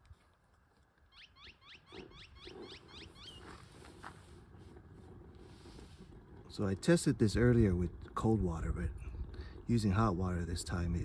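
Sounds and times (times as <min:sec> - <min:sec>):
bird chirping: 0:01.1 - 0:03.6.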